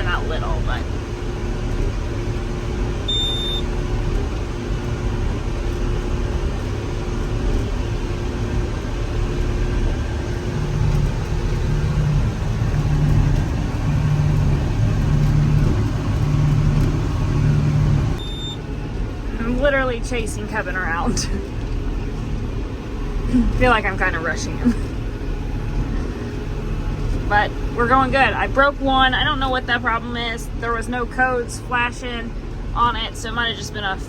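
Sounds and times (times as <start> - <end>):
baler pulsing hum: 0.0 - 34.0
tractor engine drone: 0.0 - 34.0
short high beep: 3.1 - 3.6, 18.2 - 18.6.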